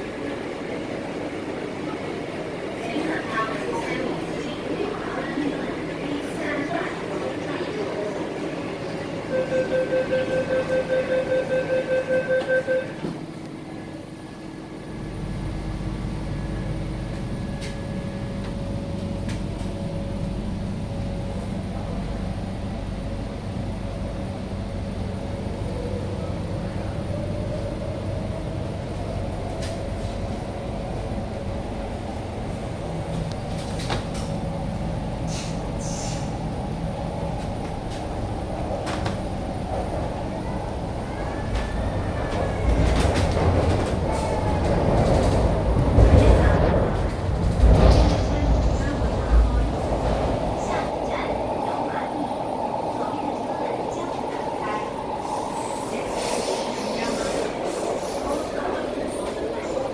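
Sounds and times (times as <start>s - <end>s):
train rumble: 0.0s - 59.9s
door-closing warning beeps: 9.3s - 13.2s.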